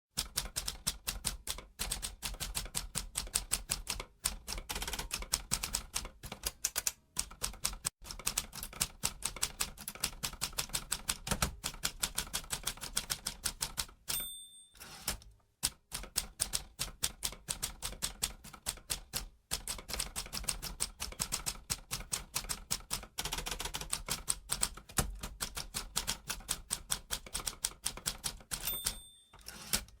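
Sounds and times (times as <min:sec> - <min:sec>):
typewriter bell ring: 0:14.1 - 0:15.2, 0:28.6 - 0:29.9
typewriter key strikes: 0:28.5 - 0:30.0.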